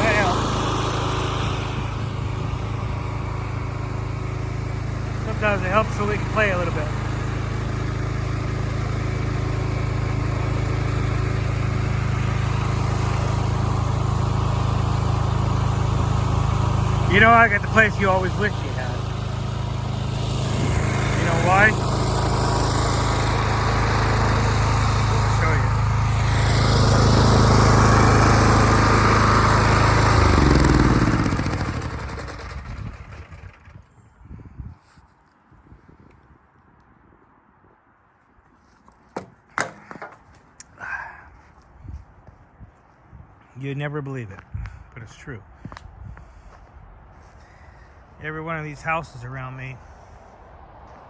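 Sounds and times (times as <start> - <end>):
pressure washer engine running: 0.0 - 33.9.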